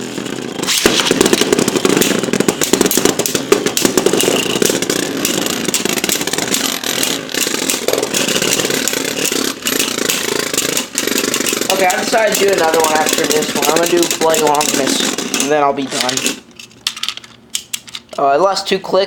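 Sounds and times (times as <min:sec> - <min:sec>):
spinning tops clashing: 0:00.5 - 0:18.0.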